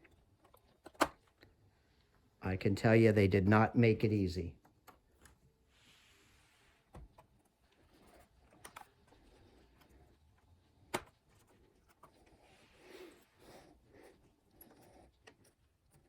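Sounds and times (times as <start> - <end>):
sharp plastic clicks: 0.4 - 1.5.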